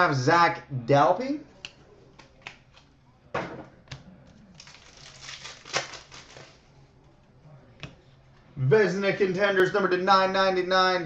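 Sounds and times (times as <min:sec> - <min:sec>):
cards clicking: 0:01.6 - 0:03.0
cards rustling: 0:03.8 - 0:07.2.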